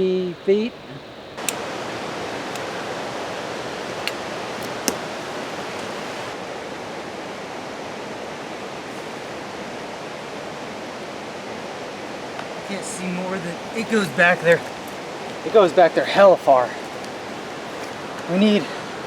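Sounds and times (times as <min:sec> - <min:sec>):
creek water rushing: 0:01.4 - 0:19.0.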